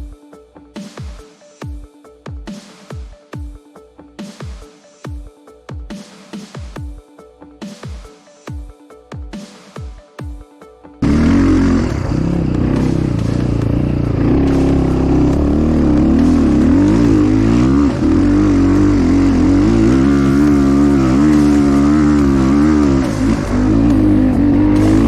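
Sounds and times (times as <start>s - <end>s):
motorcycle engine revving: 11.0s - 25.0s.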